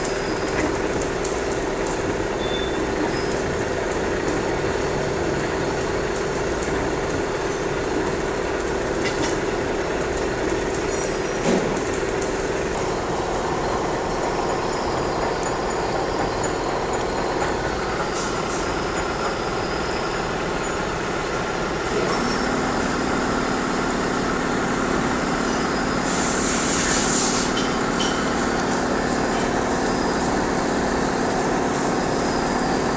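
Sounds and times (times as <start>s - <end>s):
machine humming: 0.0s - 26.1s
short hiss: 26.1s - 27.6s.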